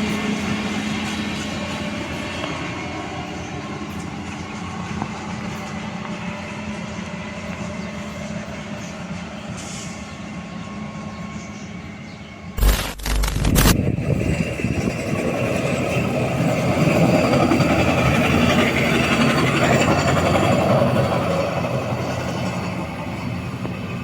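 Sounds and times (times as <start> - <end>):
freight train rolling on rails: 13.8 - 24.0.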